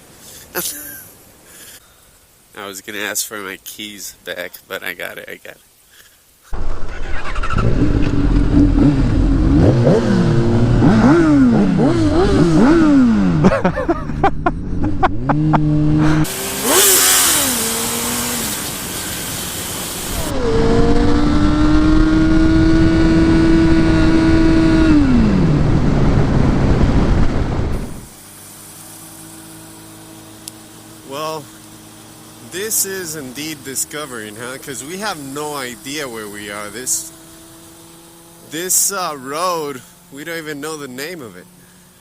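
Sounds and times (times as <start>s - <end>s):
motorcycle engine accelerating: 6.6s - 41.8s
wind noise on microphone: 20.2s - 28.1s.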